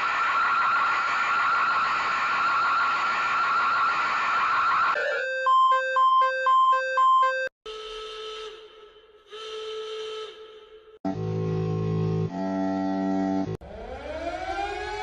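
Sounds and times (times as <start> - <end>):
rapid two-tone alarm beeps: 4.8 - 7.5
long steady alarm tones: 13.6 - 15.0.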